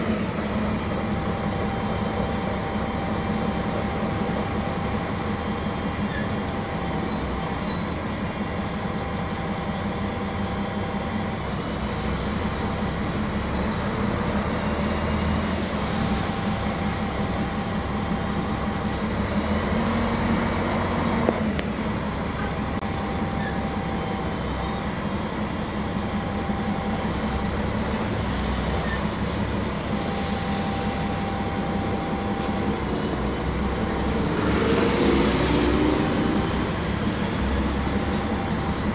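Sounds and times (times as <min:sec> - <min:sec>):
bus diesel engine drone: 0:00.0 - 0:38.9
brief high squeaks: 0:06.1 - 0:08.7.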